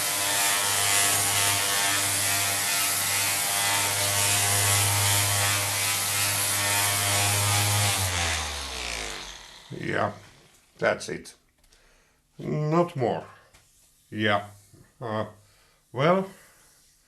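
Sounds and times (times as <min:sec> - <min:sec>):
orbital sander on metal: 0:00.0 - 0:10.4.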